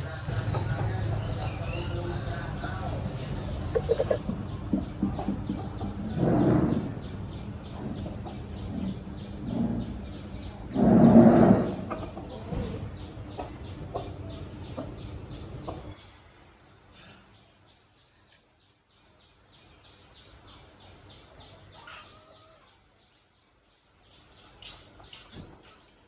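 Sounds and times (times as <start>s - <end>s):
chickens clucking: 0.0s - 16.2s, 21.4s - 23.1s
fast high chirping: 1.2s - 4.2s
loud chicken call: 3.7s - 4.2s.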